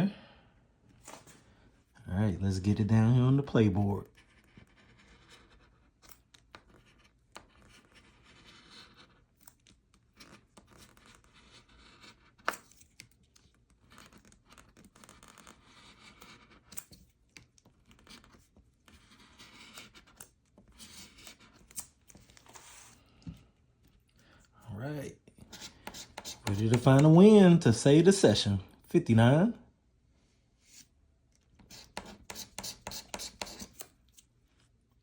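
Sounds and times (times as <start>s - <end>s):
scraping scratch-off ticket: 2.4s - 23.0s, 24.8s - 29.5s, 31.6s - 34.0s.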